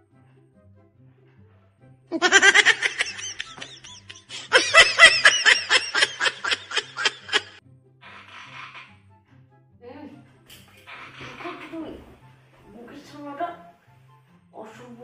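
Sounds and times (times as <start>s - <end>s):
quiet background music: 0.0s - 15.0s
high-pitched snickering laughter: 2.2s - 7.6s.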